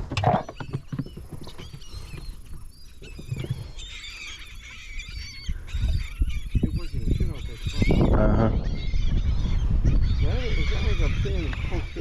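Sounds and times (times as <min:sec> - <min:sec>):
seabirds calling: 0:00.0 - 0:12.0
wind rumble: 0:04.9 - 0:12.0.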